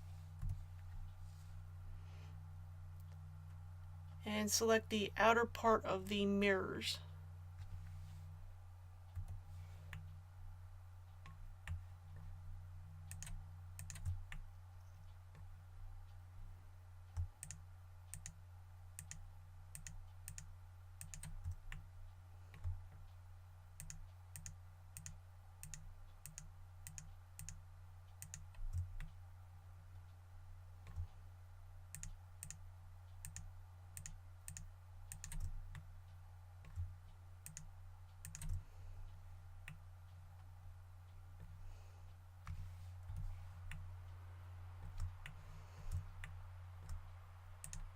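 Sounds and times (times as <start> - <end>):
low electrical hum: 0.0 - 47.9
mouse and keyboard clicking: 13.1 - 14.4, 17.1 - 18.4.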